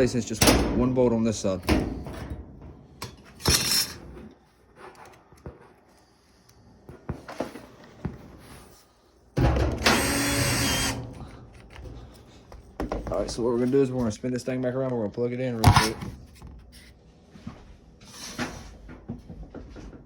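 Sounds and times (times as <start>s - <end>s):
power drill driving a bolt: 9.8s - 11.1s.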